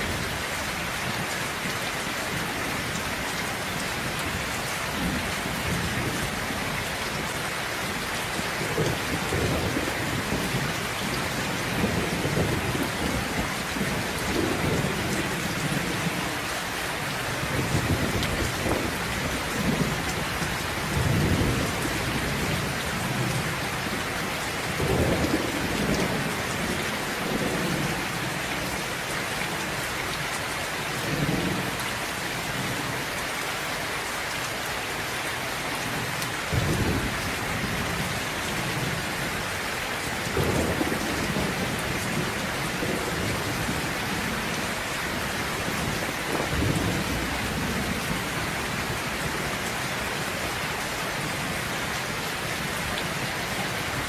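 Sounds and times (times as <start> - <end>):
heavy rain hissing: 0.0 - 54.0
thunder rumbling: 8.4 - 16.4, 17.3 - 24.0, 24.7 - 28.1, 40.3 - 49.9.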